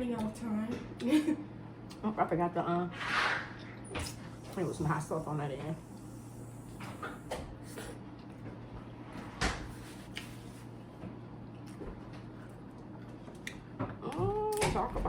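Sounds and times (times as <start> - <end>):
low hum: 0.0 - 10.6.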